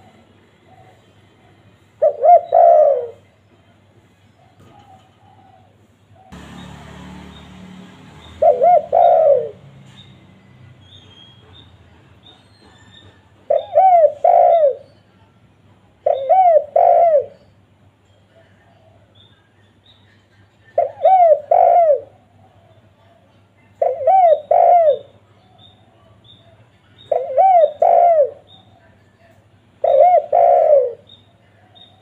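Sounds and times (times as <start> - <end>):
dove cooing: 1.8 - 3.3, 4.4 - 6.4, 8.2 - 9.7, 13.5 - 14.9, 16.0 - 17.5, 20.8 - 25.6, 26.5 - 28.5, 29.8 - 31.1.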